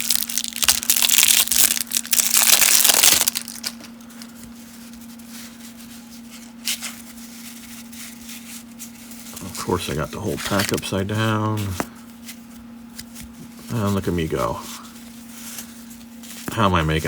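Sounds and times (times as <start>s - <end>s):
cellophane wrapper crinkling and tearing: 0.0s - 4.3s, 9.3s - 10.9s
low electrical hum: 0.0s - 17.0s.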